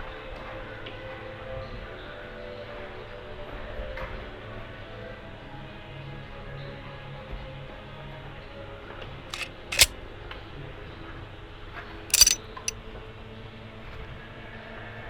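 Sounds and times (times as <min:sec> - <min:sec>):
gas gun shots cracking: 0:09.4 - 0:09.9, 0:12.1 - 0:12.4.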